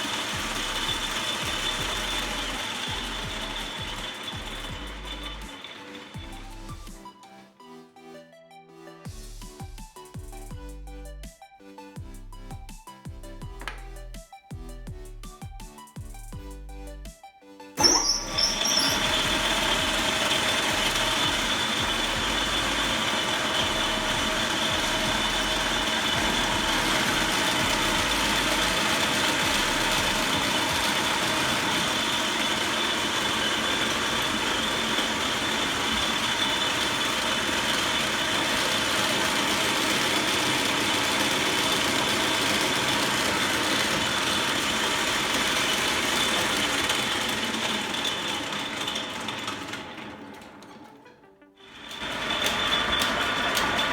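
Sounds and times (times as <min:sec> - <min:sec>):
metal lathe whirring: 0:00.0 - 0:07.0, 0:17.8 - 0:51.0, 0:51.7 - 0:53.9.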